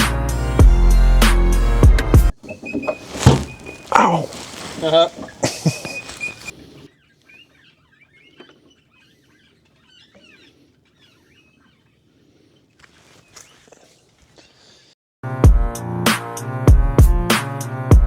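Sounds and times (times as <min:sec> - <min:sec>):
faint bird chirps: 0:02.4 - 0:14.6.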